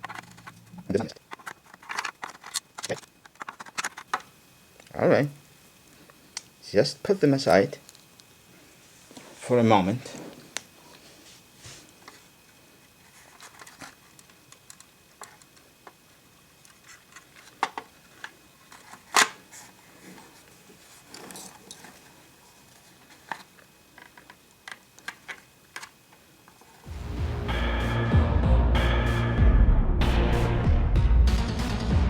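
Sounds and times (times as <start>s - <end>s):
clicks and knocks of radio casing: 0.0s - 4.3s, 23.2s - 26.0s
loud music: 26.9s - 32.0s.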